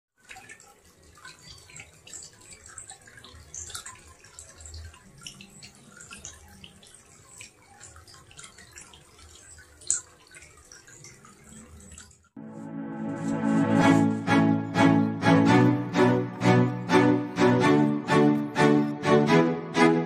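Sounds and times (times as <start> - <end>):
water trickling and dripping: 0.1 - 12.4.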